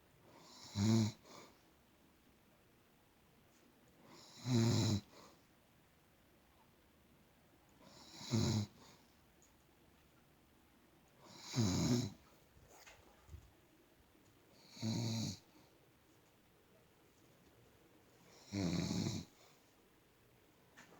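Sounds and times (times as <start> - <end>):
woman snoring: 0.4 - 1.3, 4.1 - 5.1, 7.9 - 8.8, 11.2 - 12.2, 14.6 - 15.5, 18.3 - 19.4.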